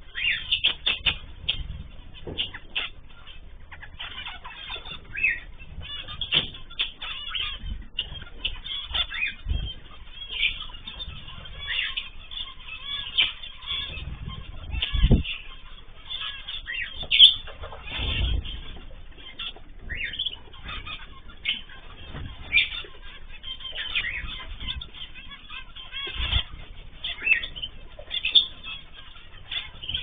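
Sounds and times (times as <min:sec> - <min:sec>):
small birds chirping: 0:00.0 - 0:30.0
wings flapping: 0:12.8 - 0:30.0.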